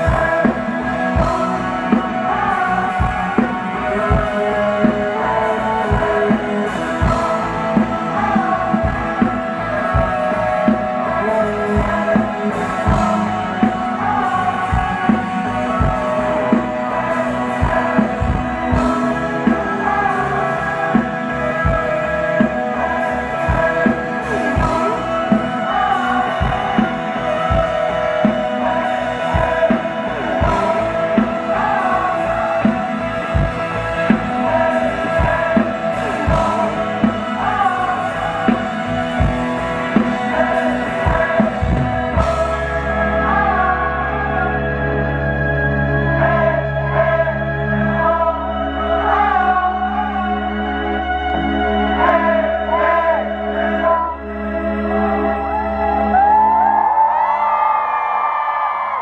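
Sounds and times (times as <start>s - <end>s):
drum kit beat: 0.0s - 43.4s
bass guitar: 0.0s - 59.0s
guitar: 0.0s - 59.0s
person singing: 0.0s - 59.0s.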